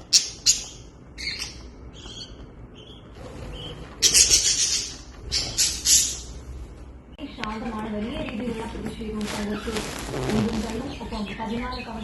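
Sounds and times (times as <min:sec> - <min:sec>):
budgerigars chirping: 0:00.0 - 0:06.4, 0:10.6 - 0:12.0.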